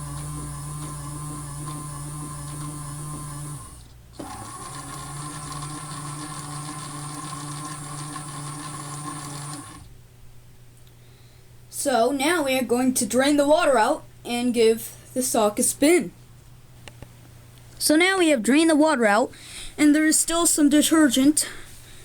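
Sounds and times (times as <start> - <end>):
toy washing machine motor whirring: 0.0 - 9.9.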